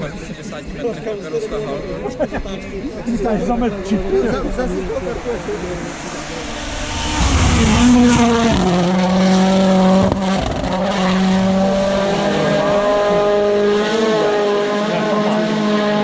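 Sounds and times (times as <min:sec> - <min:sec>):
rally car engine at high revs: 0:05.4 - 0:16.0.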